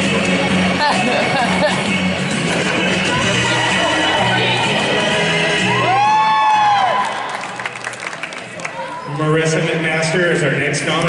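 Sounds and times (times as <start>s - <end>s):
recorded song with bass: 0.0s - 6.9s.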